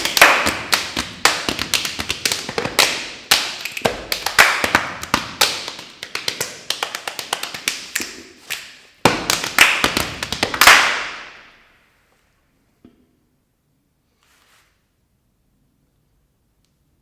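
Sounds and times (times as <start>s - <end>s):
body percussion claps and slaps: 0.0s - 11.7s.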